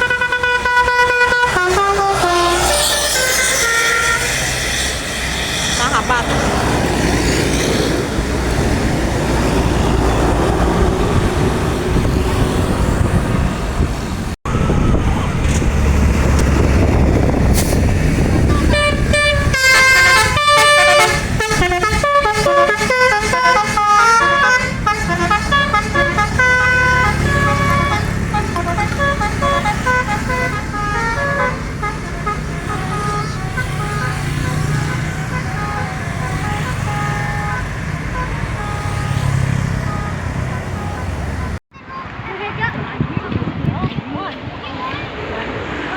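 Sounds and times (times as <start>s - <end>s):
bus horn playing a tune: 0.0s - 4.6s, 18.4s - 41.6s
vehicle engine: 0.0s - 41.6s
road noise: 0.0s - 45.9s.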